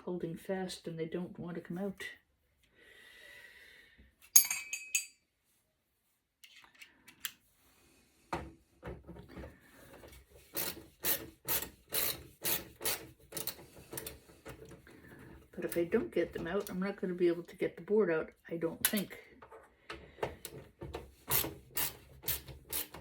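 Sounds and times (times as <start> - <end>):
hand tool scraping screws: 10.4 - 14.8, 20.4 - 23.0.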